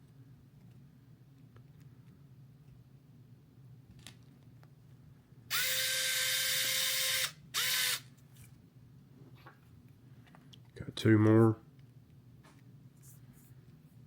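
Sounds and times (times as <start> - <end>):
drill whining: 5.5 - 8.0.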